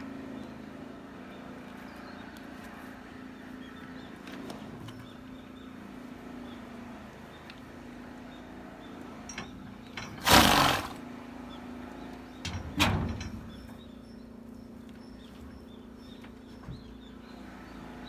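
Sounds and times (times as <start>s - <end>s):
horse sneezing: 10.2s - 11.0s.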